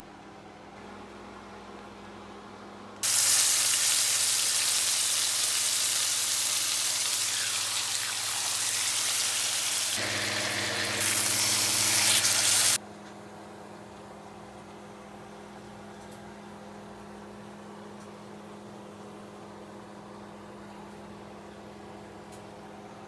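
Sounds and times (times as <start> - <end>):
steak sizzling in a pan: 3.0 - 12.8.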